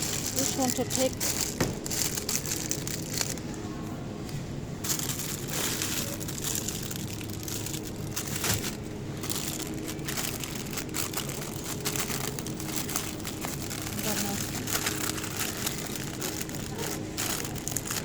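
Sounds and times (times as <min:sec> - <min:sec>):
low steady hum: 0:00.0 - 0:18.0
rustling and crinkling handling noise: 0:00.0 - 0:18.0.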